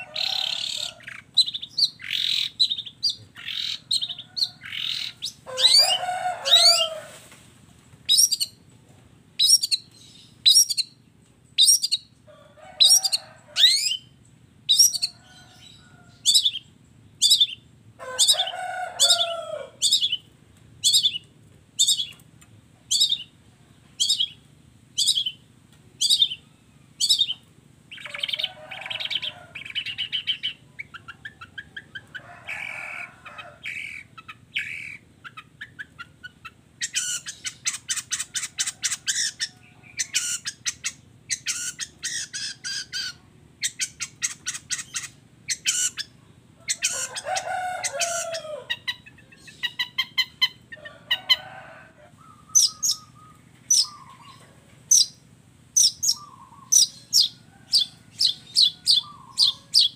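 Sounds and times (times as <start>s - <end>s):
harsh rasping bird call: 0.0s - 2.8s, 3.4s - 7.2s
fast bird chattering: 0.0s - 6.9s, 8.1s - 8.6s, 9.4s - 10.9s, 11.6s - 12.1s, 14.7s - 15.2s, 16.3s - 17.6s, 19.1s - 20.2s, 20.8s - 21.2s, 21.8s - 22.2s, 22.9s - 23.3s, 24.0s - 24.4s, 25.0s - 25.4s, 26.0s - 26.4s, 27.0s - 32.7s, 33.6s - 50.7s, 52.3s - 55.2s, 55.8s - 59.9s.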